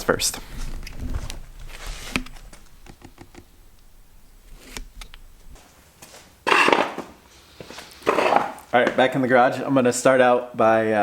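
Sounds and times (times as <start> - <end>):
objects being handled: 4.5 - 9.1.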